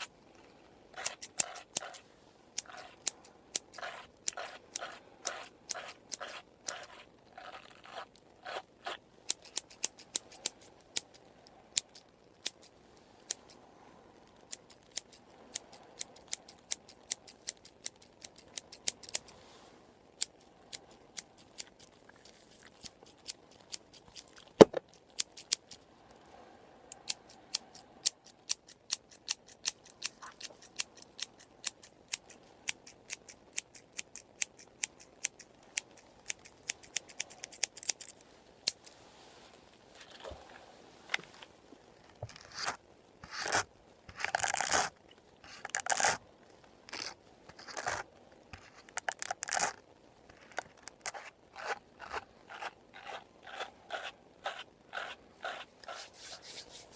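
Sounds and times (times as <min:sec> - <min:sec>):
scissors snipping hair: 0:01.0 - 0:02.0, 0:02.6 - 0:08.1, 0:08.9 - 0:11.1, 0:11.7 - 0:12.7, 0:27.0 - 0:38.9.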